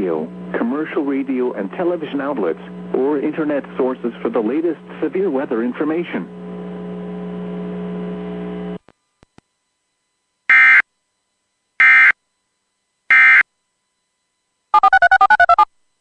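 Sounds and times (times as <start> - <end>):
low radio hum: 0.0 - 14.6
digital data tone bursts: 10.5 - 10.8, 11.8 - 12.2, 13.1 - 13.4, 14.7 - 15.7
warbling two-pitch beeps: 14.8 - 15.7.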